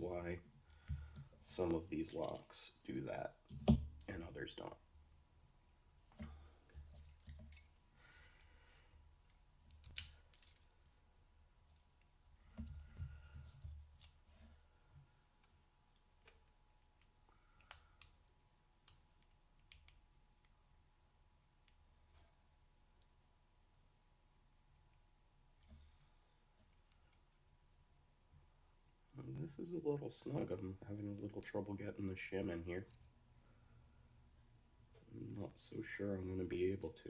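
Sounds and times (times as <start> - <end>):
padlock parts clicking and scraping: 6.8 - 11.0.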